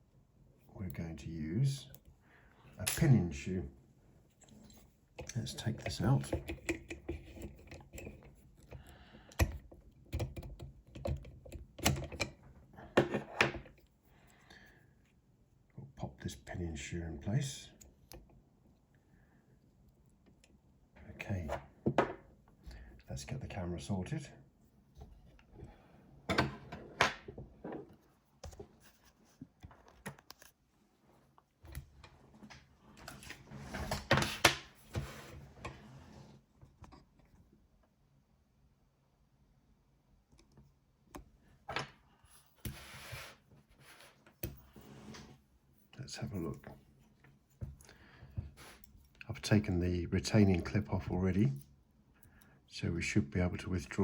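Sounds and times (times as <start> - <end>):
lock and tools clicking: 9.4 - 12.4
objects being moved on a bench: 25.0 - 30.5, 32.0 - 36.4, 42.6 - 45.4.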